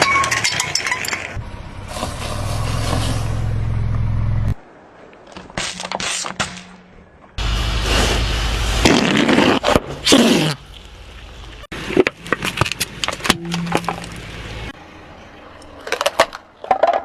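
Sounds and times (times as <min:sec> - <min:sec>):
objects cracking under wheels: 0:00.0 - 0:03.2, 0:08.8 - 0:14.7, 0:15.6 - 0:17.0
car engine rumble: 0:00.0 - 0:05.3, 0:09.6 - 0:17.0
tyre noise: 0:00.0 - 0:17.0.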